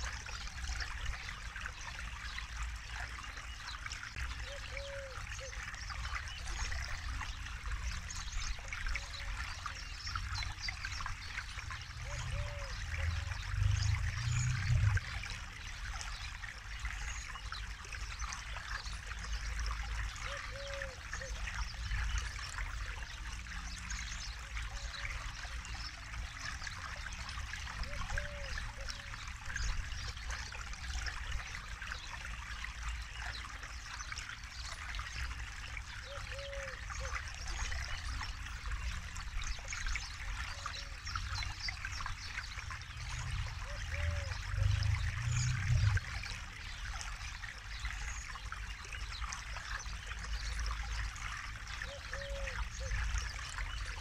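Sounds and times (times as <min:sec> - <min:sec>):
river water burbling over stones: 0:00.0 - 0:54.0
deep rumble: 0:44.6 - 0:46.2.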